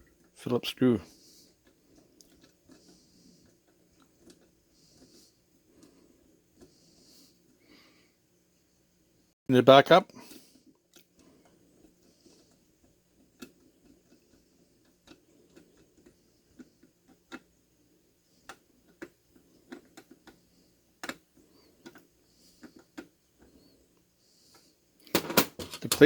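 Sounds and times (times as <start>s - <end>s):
small clicks and taps: 18.3s - 23.7s.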